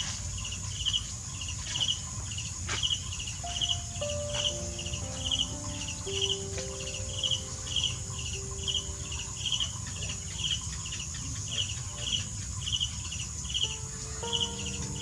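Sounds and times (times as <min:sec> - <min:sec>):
rhythmic trilling chirps: 0:03.3 - 0:15.0
steady high hiss: 0:03.4 - 0:12.5, 0:13.1 - 0:15.0.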